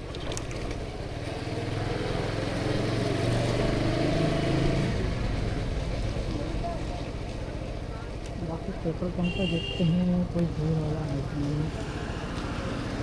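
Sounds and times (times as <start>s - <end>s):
motorcycle engine accelerating: 1.2s - 6.4s.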